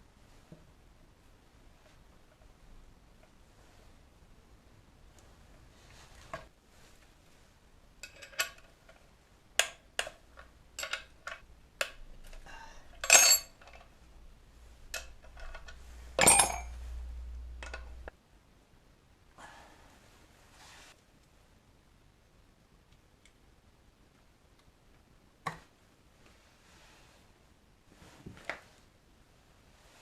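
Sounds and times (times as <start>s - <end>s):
metal tools clinking: 10.8s - 11.4s, 13.0s - 13.9s, 14.9s - 18.1s
low hum: 14.0s - 18.1s.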